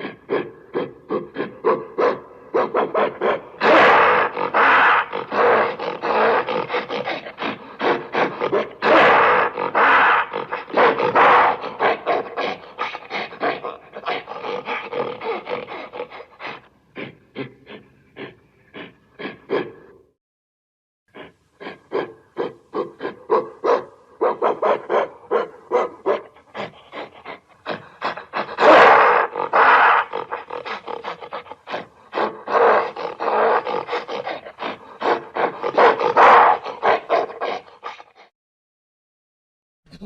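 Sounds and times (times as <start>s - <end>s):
giant ape grunting and roaring: 2.6s - 20.0s, 26.4s - 38.3s.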